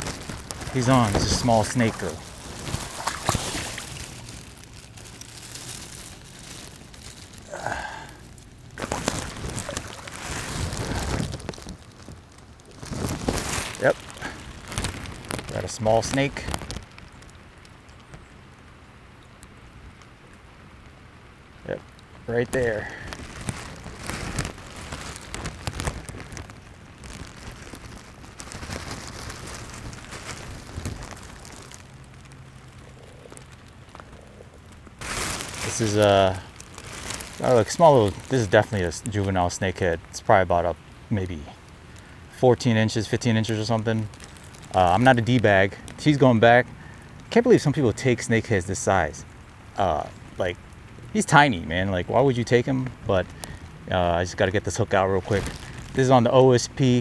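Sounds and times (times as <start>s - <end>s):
water splashing: 0.0s - 12.1s, 12.7s - 17.0s, 23.1s - 39.5s, 55.2s - 56.2s
crackly hiss: 0.0s - 57.0s
rain: 0.0s - 57.0s.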